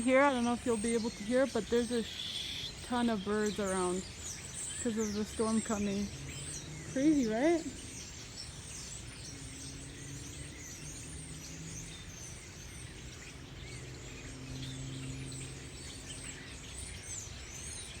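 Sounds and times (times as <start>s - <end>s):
many birds chirping: 0.0s - 18.0s.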